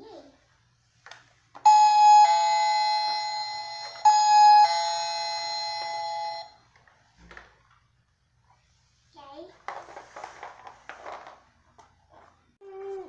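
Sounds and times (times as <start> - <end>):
two-tone doorbell chime: 1.6 - 6.6.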